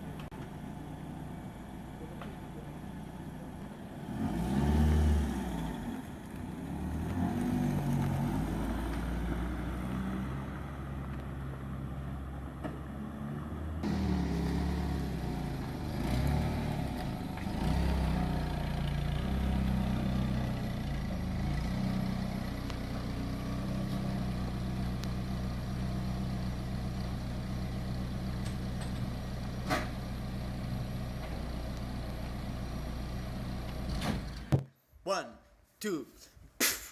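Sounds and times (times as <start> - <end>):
car engine revving: 3.8 - 10.8, 13.5 - 23.7.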